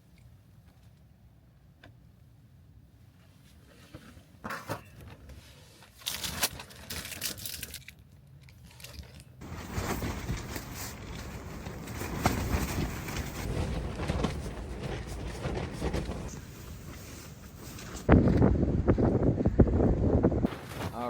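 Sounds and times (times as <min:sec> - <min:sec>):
strong gusty wind: 0:09.4 - 0:21.0.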